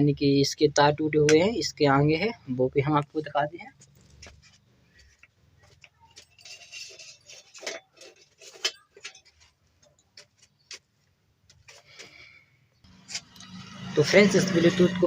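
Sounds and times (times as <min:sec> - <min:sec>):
scraping rustle: 0:03.7 - 0:11.0.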